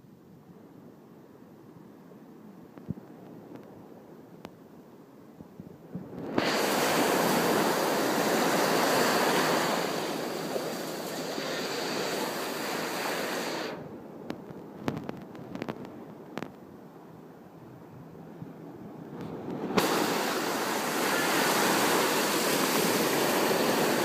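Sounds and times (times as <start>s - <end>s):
ocean surf rushing: 6.1s - 14.2s, 18.7s - 24.0s.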